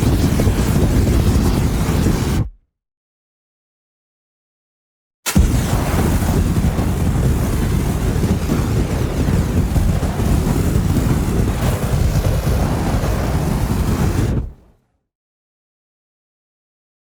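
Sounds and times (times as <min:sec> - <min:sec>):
fire crackling and rumbling: 0:00.0 - 0:02.5, 0:05.3 - 0:14.8.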